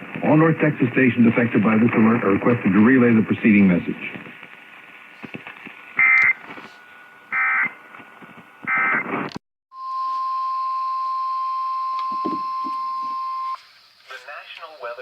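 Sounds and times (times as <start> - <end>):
radio hiss: 0.0 - 9.4, 12.2 - 15.0
buzzy data bursts: 5.9 - 7.8.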